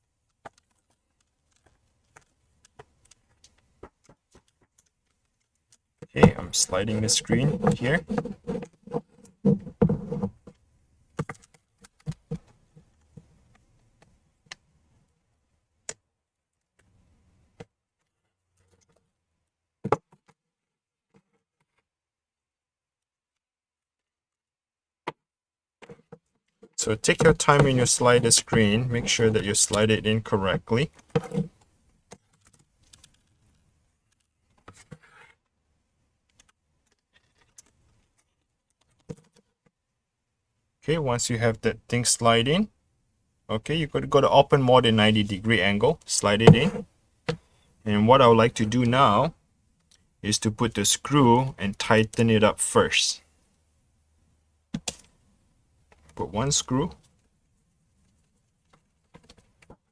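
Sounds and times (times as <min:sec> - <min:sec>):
laptop parts clicking and knocking: 0:00.3 - 0:10.6, 0:11.2 - 0:12.6, 0:30.9 - 0:33.5, 0:36.3 - 0:39.7, 0:46.4 - 0:47.4, 0:54.7 - 0:55.1
short scrape: 0:06.2 - 0:10.4, 0:46.4 - 0:46.8.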